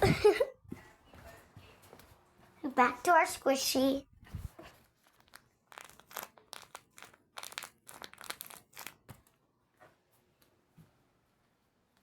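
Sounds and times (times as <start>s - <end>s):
crinkly material rustling: 4.2s - 10.2s.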